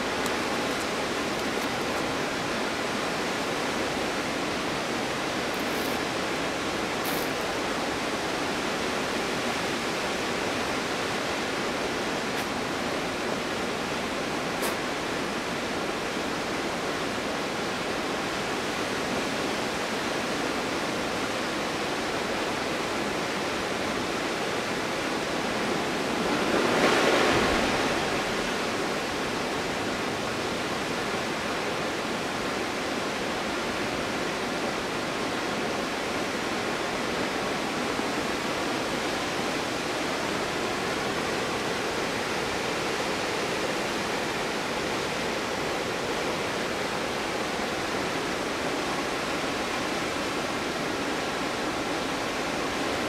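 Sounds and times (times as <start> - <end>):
waterfall rushing: 0.0 - 19.0.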